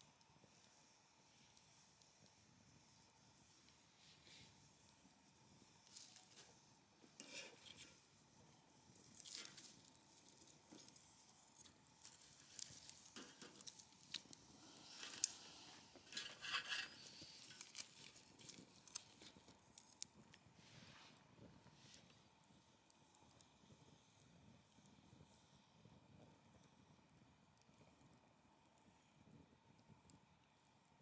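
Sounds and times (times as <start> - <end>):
campfire crackling: 8.9 - 20.4.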